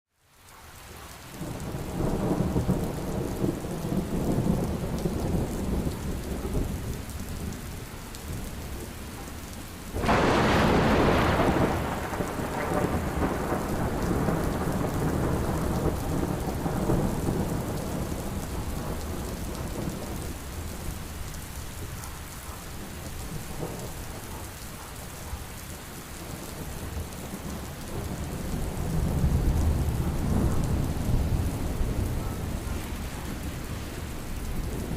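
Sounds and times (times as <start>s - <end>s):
heavy rain pouring: 0.2s - 34.9s
rolling thunder: 1.4s - 9.0s, 9.9s - 22.0s, 22.8s - 25.2s, 26.2s - 34.9s
loud thunderclap: 10.0s - 20.4s, 27.5s - 33.8s.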